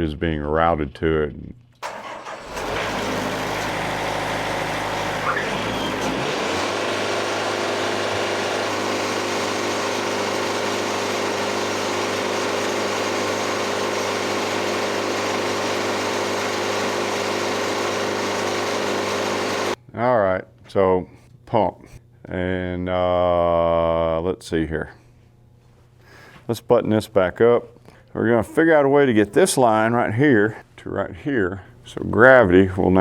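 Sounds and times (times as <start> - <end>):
sawmill engine running: 1.8 - 19.8.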